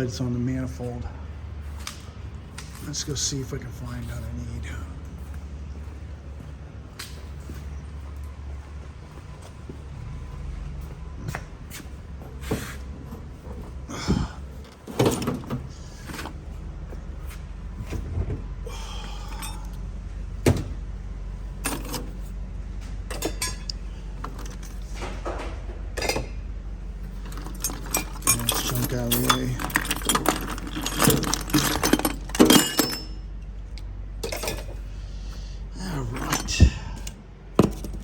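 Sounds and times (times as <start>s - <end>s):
rummaging through drawers: 12.4s - 16.4s, 21.6s - 22.3s, 23.0s - 26.4s, 27.1s - 33.2s, 34.2s - 34.8s, 36.1s - 38.0s.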